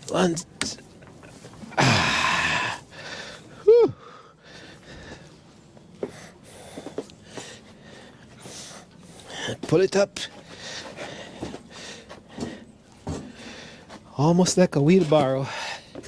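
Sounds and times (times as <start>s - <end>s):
man exhaling with strain: 1.7s - 4.2s
man grunting: 1.8s - 2.8s.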